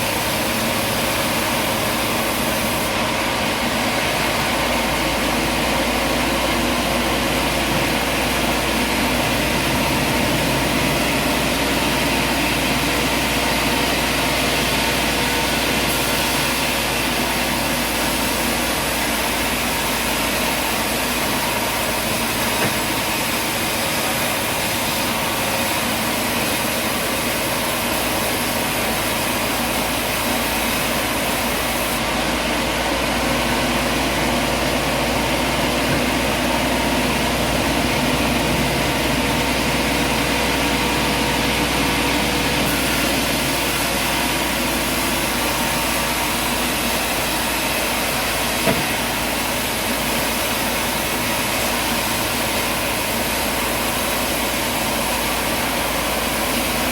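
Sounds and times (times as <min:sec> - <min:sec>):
steady machinery noise: 0:00.0 - 0:56.9.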